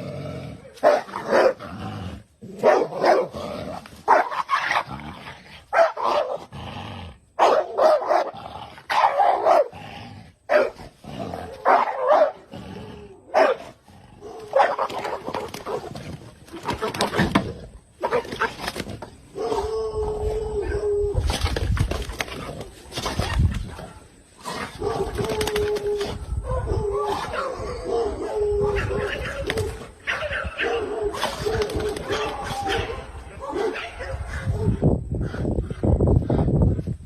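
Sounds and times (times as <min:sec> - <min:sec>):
dog barking: 0:00.8 - 0:01.6, 0:02.6 - 0:03.3, 0:04.1 - 0:04.3, 0:05.7 - 0:06.4, 0:07.4 - 0:08.3, 0:08.9 - 0:09.7, 0:10.5 - 0:10.8, 0:11.6 - 0:12.4, 0:13.3 - 0:13.7, 0:14.3 - 0:15.0, 0:30.1 - 0:34.8.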